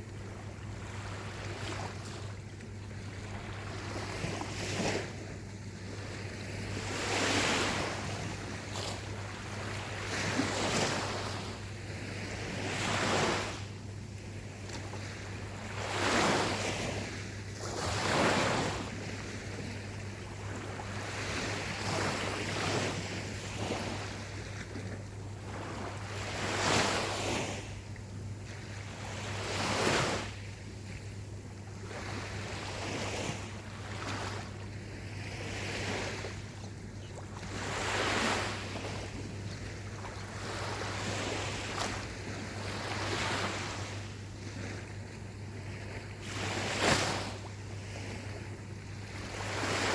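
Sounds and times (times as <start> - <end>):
steady low hum: 0.0 - 12.9, 13.6 - 46.6
ocean waves breaking on beach: 0.0 - 49.9.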